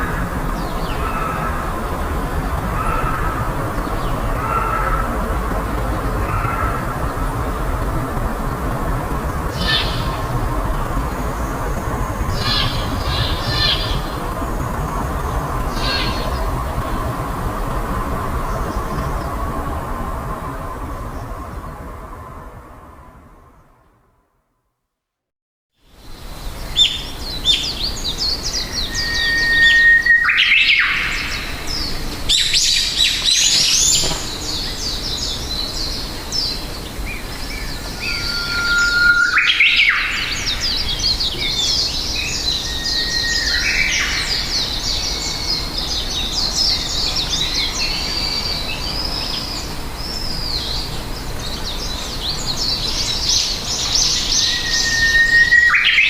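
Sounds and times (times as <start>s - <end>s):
small birds chirping: 0.0s - 19.5s
held whistled note: 38.0s - 39.8s, 54.4s - 55.9s.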